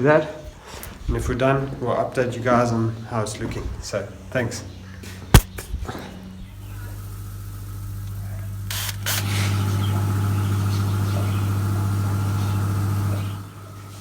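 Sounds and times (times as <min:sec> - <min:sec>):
low machine hum: 0:03.0 - 0:14.0
sharp click: 0:05.3 - 0:05.7.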